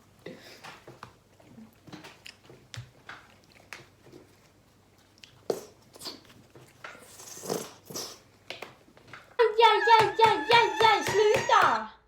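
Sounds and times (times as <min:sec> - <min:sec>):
people chewing food: 0:00.0 - 0:09.4.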